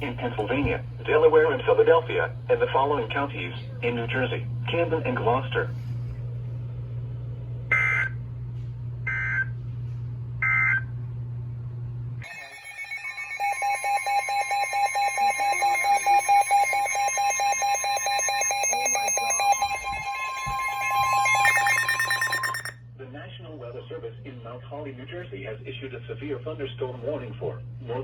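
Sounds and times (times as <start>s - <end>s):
pulsing electronic alert tone: 12.2s - 22.8s.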